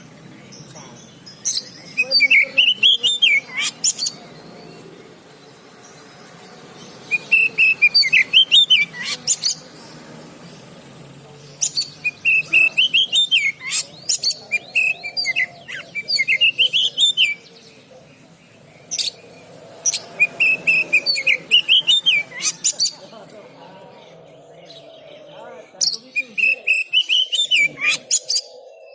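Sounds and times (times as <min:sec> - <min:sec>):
bird singing whistled phrases: 0:01.5 - 0:04.2, 0:07.1 - 0:09.6, 0:11.6 - 0:17.4, 0:20.2 - 0:22.9, 0:26.1 - 0:28.9.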